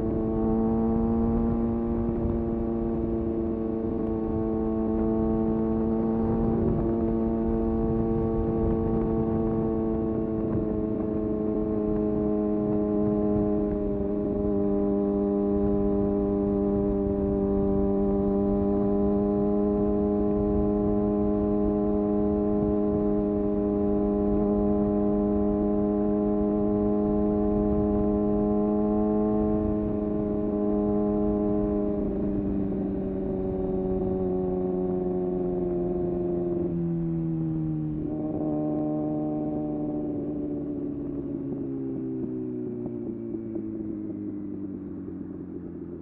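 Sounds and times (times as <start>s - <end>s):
wind rumble: 0.0s - 14.8s
motorcycle engine at high rpm: 0.0s - 46.0s.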